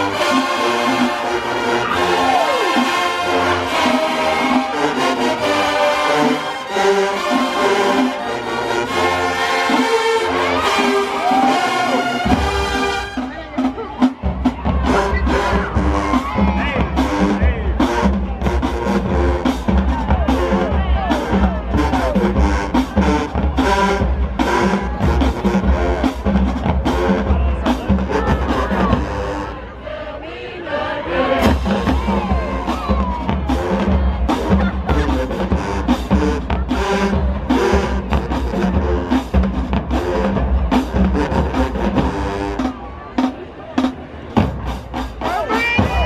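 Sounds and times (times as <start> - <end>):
drum-line strokes: 0.0 - 46.0
marching band brass playing: 0.0 - 46.0
bass drum: 14.2 - 29.3, 31.4 - 42.4, 44.4 - 46.0.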